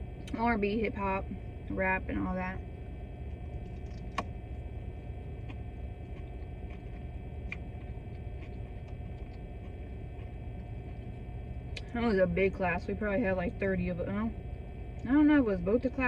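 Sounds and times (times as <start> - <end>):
low hum: 0.0 - 16.0
mouth clicks and chewing: 5.4 - 11.9.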